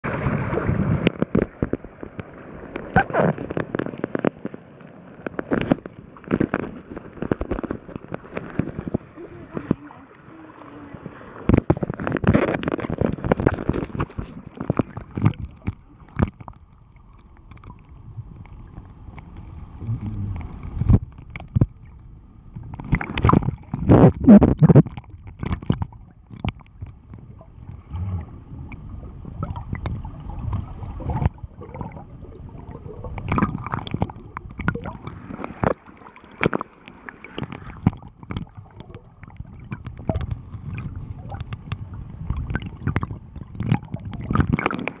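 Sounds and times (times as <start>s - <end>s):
muffled water gurgling and sloshing: 0.0s - 45.0s
splashing: 22.7s - 45.0s.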